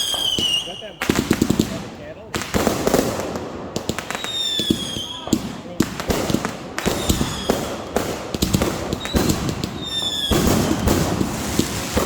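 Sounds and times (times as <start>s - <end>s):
firework whistles: 0.0s - 1.2s, 4.1s - 5.3s, 9.0s - 12.0s
fireworks bangs and crackling: 0.0s - 12.0s.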